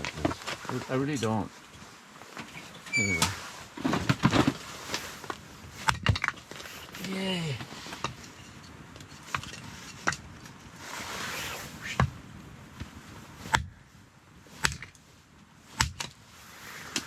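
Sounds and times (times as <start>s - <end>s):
rustling: 0.0s - 17.0s
axe chopping firewood: 5.8s - 6.3s, 13.4s - 13.8s, 14.6s - 15.0s, 15.7s - 16.2s.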